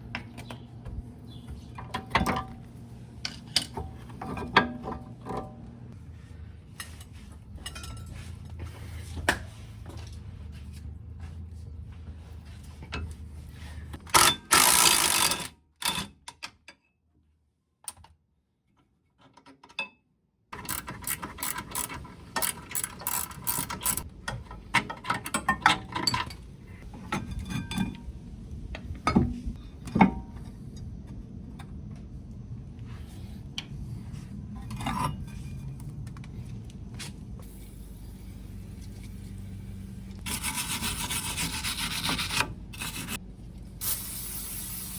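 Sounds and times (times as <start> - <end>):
metal tools clanking: 6.8 - 8.4, 20.6 - 28.1
ratchet wrench clicking: 14.2 - 16.0, 20.6 - 24.1.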